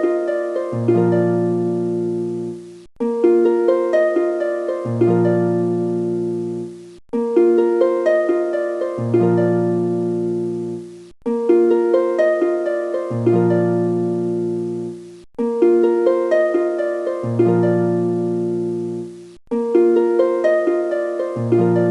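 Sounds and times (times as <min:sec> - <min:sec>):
plucked harp-like melody: 0:00.0 - 0:21.9.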